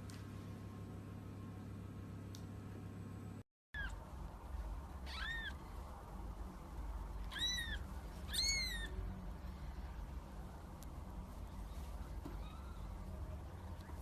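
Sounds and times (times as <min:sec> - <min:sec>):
steady low hum: 0:00.0 - 0:14.0
kitten meowing: 0:05.0 - 0:05.6, 0:07.3 - 0:09.0.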